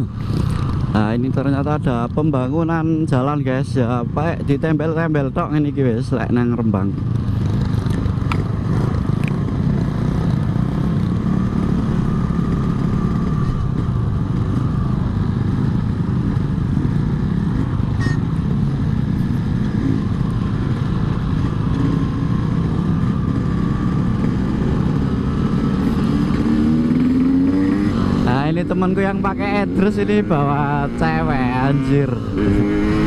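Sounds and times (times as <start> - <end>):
two-stroke motorcycle engine: 6.3 - 33.0.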